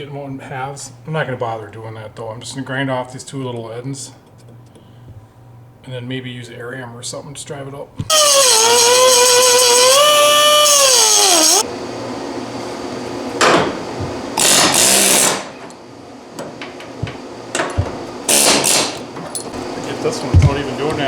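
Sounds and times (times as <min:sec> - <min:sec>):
power grinder grinding metal: 0:08.1 - 0:11.6.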